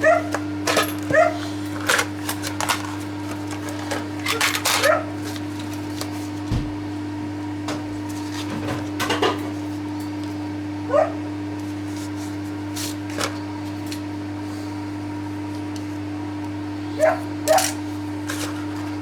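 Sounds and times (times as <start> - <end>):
dog yipping and barking: 0.0 - 0.3, 1.1 - 1.4, 10.9 - 11.2, 17.0 - 17.7.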